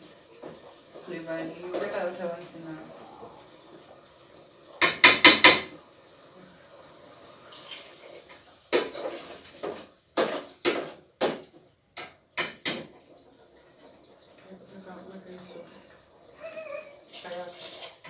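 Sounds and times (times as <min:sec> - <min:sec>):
metal utensils clanking on pot: 0:04.8 - 0:05.7.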